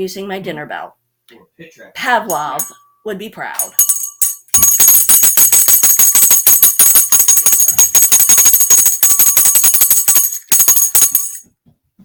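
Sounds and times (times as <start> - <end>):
dinner bell jangling: 2.3 - 2.9, 3.6 - 11.5.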